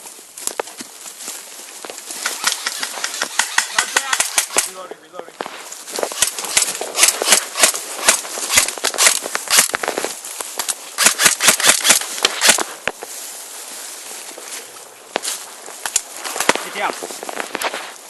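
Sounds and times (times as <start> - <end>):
airsoft guns firing: 2.2 - 4.8, 6.2 - 9.9, 11.0 - 12.7.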